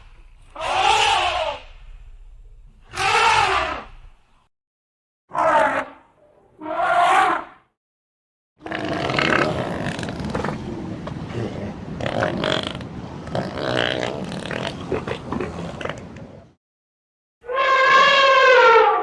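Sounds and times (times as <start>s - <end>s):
elephant high-pitched cries: 0.6s - 1.7s, 2.9s - 3.9s, 17.4s - 19.0s
elephant growling: 8.6s - 16.2s.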